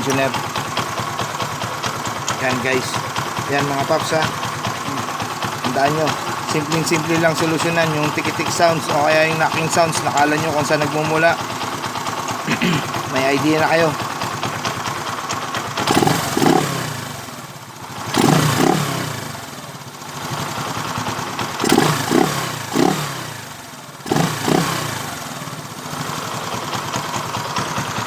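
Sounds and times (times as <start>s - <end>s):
small motorcycle engine revving: 12.3s - 28.0s.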